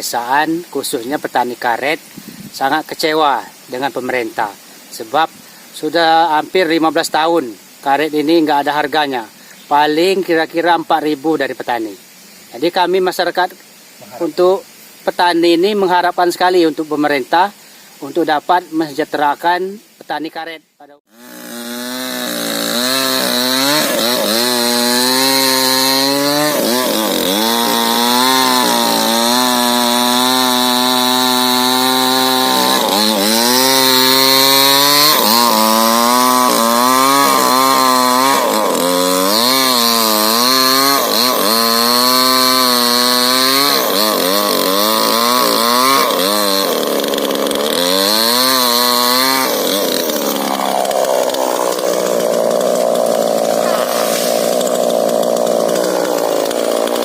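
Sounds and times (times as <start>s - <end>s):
chainsaw cutting into wood: 21.1s - 57.0s.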